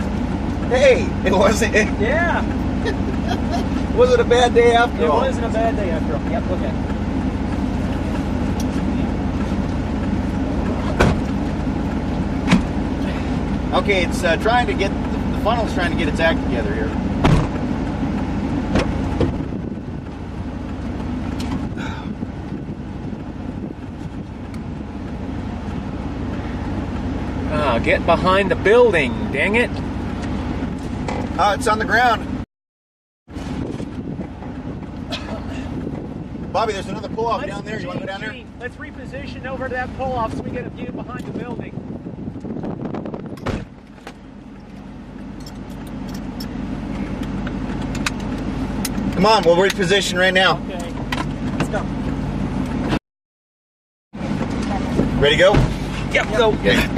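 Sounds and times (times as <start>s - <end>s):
car engine running: 0.0s - 32.4s, 33.3s - 53.0s, 54.1s - 56.9s
vehicle rumble: 0.0s - 32.5s, 33.3s - 53.0s, 54.1s - 56.9s
car door slamming: 10.7s - 11.4s, 12.4s - 12.8s, 17.2s - 17.6s, 18.7s - 19.5s, 43.3s - 44.2s, 54.9s - 56.6s
wind noise: 17.2s - 20.3s, 21.4s - 25.8s, 33.3s - 38.6s, 39.2s - 43.9s.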